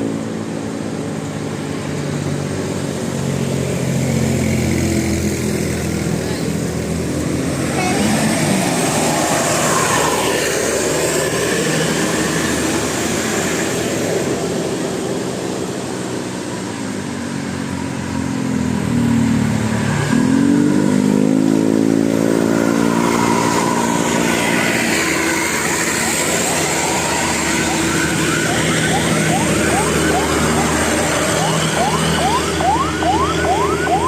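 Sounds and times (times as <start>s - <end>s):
bus engine running under load: 0.0s - 34.0s.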